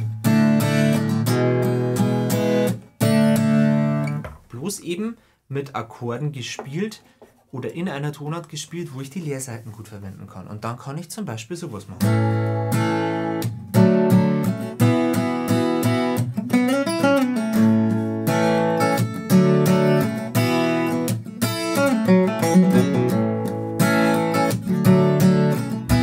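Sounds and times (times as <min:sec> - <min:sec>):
acoustic guitar strumming: 0:00.0 - 0:04.5, 0:12.0 - 0:26.0.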